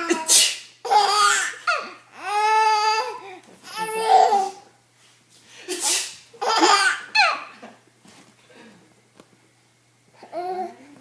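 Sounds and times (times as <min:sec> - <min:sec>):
woman fake sneezing: 0:00.0 - 0:00.8, 0:05.7 - 0:06.3
baby laughing: 0:00.0 - 0:04.6, 0:06.4 - 0:07.6.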